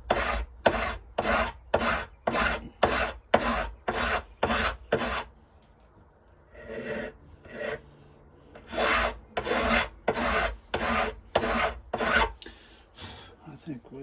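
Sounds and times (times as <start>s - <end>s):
hand file rasping: 0.0s - 5.3s, 6.6s - 7.8s, 8.5s - 12.4s.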